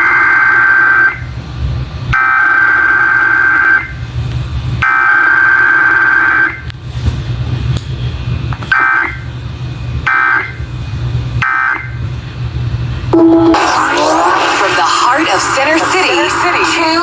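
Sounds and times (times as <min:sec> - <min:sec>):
steady low hum: 0:12.1 - 0:17.0.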